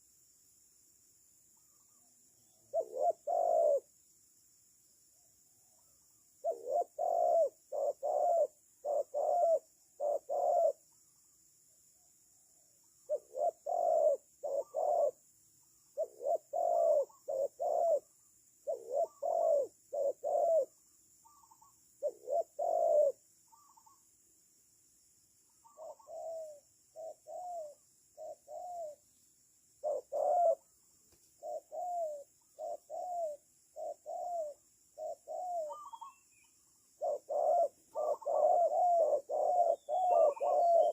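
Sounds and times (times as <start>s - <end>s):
doves cooing: 2.5s - 3.9s, 5.8s - 10.8s, 13.1s - 15.2s, 16.0s - 24.0s, 25.5s - 29.0s, 29.8s - 30.8s, 31.4s - 36.2s, 36.9s - 40.9s.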